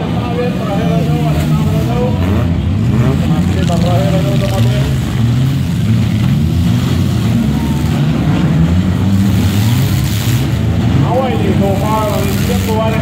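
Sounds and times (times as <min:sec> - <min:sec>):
car engines revving loudly: 0:00.0 - 0:13.0.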